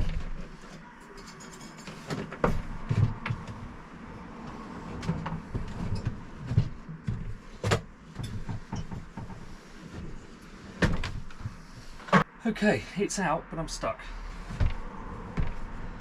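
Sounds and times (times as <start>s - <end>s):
fridge knocking and scraping: 2.0s - 3.8s, 4.4s - 12.2s.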